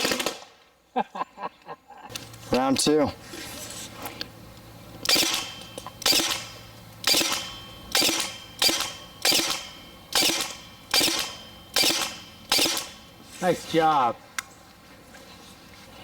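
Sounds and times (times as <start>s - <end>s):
airsoft rifle shots: 0.0s - 0.6s, 5.0s - 13.1s.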